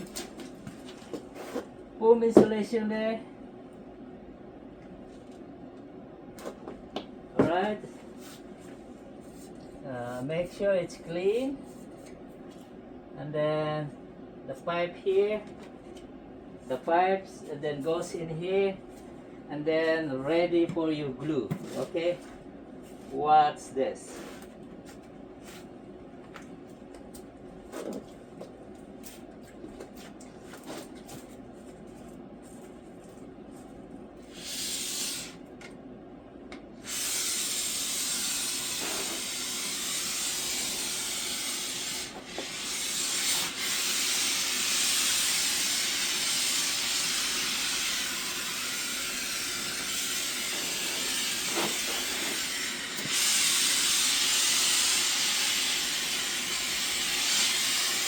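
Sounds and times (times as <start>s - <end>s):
spray foam hissing from can: 36.9s - 58.0s.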